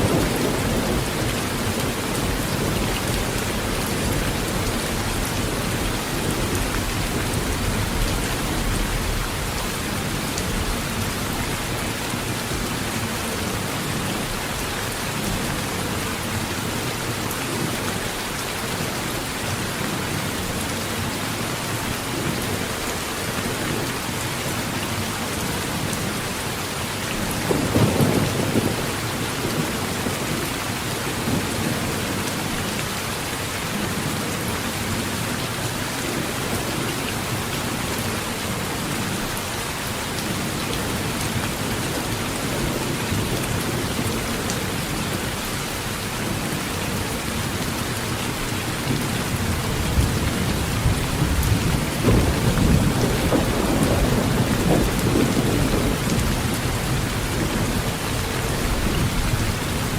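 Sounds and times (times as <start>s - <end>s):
heavy rain on a tin roof: 0.0s - 59.9s
thunder rumbling: 48.9s - 59.9s.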